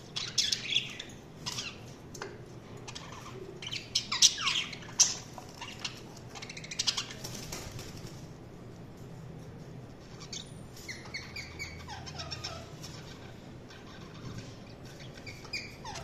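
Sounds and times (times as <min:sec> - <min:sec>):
budgerigars chirping and warbling: 0:00.0 - 0:02.0, 0:02.7 - 0:07.3, 0:10.1 - 0:16.0.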